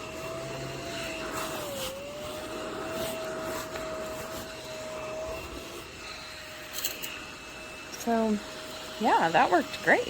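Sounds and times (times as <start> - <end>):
mini vacuum whining: 0.0 - 10.0.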